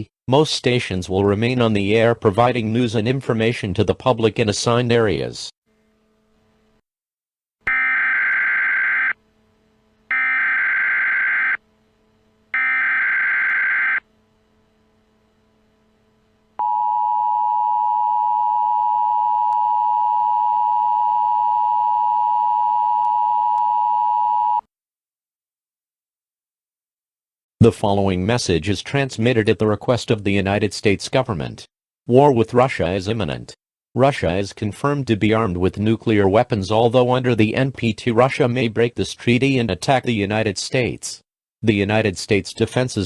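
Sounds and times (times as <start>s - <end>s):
screechy digital data tones: 7.7s - 9.2s, 10.1s - 11.6s, 12.6s - 14.0s
steady two-tone alarm: 7.7s - 9.2s, 10.1s - 11.6s, 12.5s - 14.1s.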